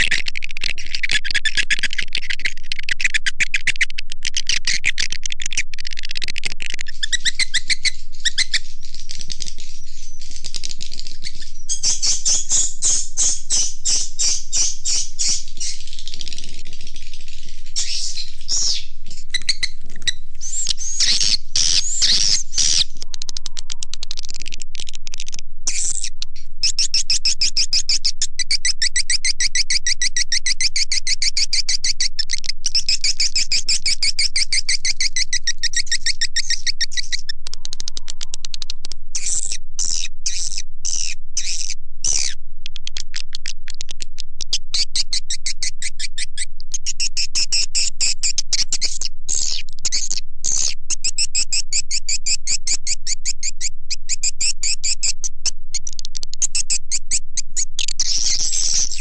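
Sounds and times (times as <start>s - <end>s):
low steady hum: 0.0s - 30.0s, 34.8s - 59.0s
rapid twittering swiftlet chirps: 0.0s - 42.4s, 56.4s - 59.0s.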